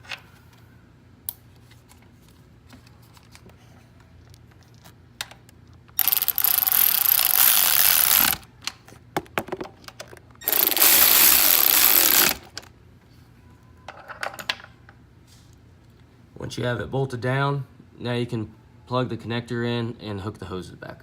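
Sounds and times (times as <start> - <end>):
metal parts clicking: 4.6 - 8.8, 9.9 - 12.7
power tool driving nuts: 6.0 - 8.4, 10.4 - 12.6.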